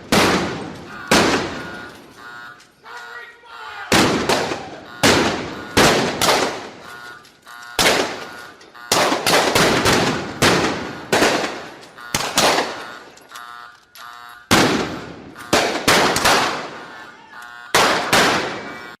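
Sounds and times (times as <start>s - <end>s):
gunshots echoing: 0.0s - 2.2s, 3.9s - 7.1s, 7.8s - 13.2s, 14.5s - 18.8s
short ringing tones: 0.8s - 3.1s, 6.6s - 9.0s, 10.2s - 15.8s.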